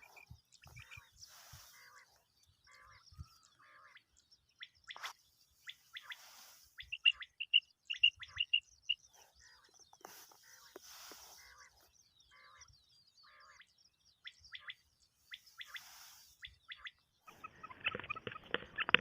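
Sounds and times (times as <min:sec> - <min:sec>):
quail calling: 0:05.7 - 0:13.6, 0:14.5 - 0:19.0.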